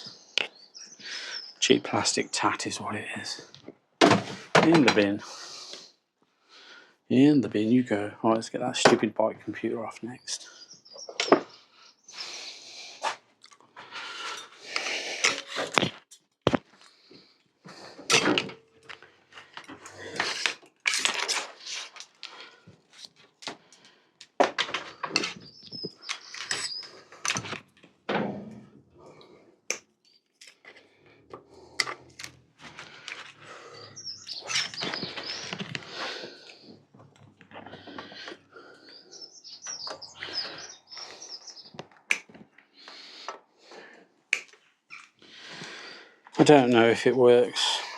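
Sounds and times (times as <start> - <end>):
birds chirping faintly: 0.0 - 3.6, 4.8 - 13.0, 21.6 - 27.6, 28.6 - 43.9
hand work clicks and scraping: 14.2 - 16.2, 17.6 - 28.0, 29.2 - 33.5, 34.1 - 38.5.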